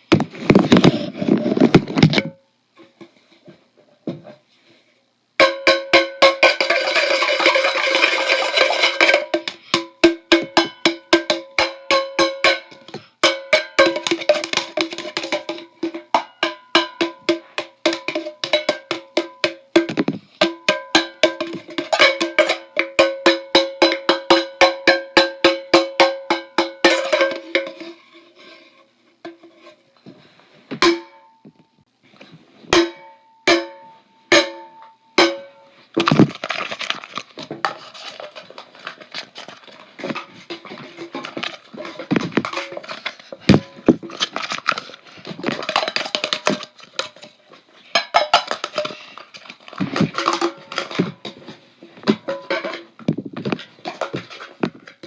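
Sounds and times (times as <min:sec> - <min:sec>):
percussive music: 0:05.4 - 0:27.7.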